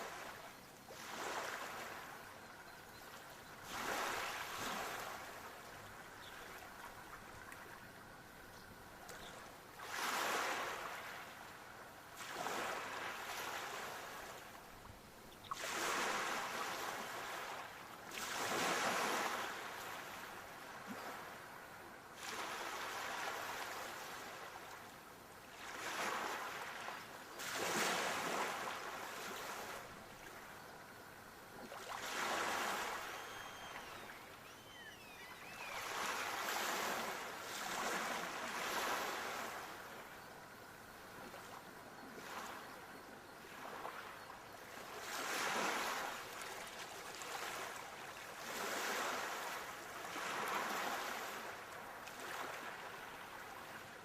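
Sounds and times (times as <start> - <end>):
sea waves breaking: 31.7 - 39.9.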